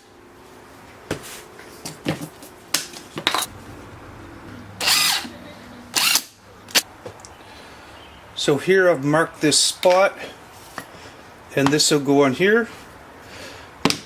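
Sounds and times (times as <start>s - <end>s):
bursts of cutting noise: 3.5s - 6.8s
drill press running: 3.5s - 6.8s.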